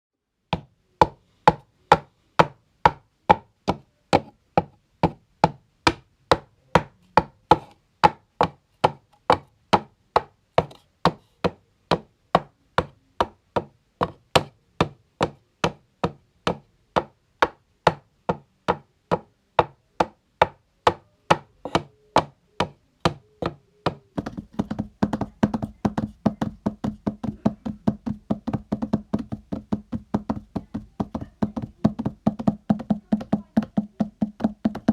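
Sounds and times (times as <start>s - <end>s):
horse hoof clip-clop knocks: 24.2s - 34.9s.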